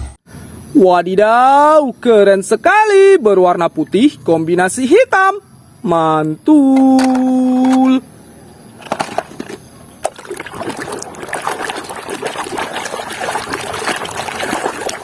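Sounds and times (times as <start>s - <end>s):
water trickling and splashing: 9.0s - 15.0s.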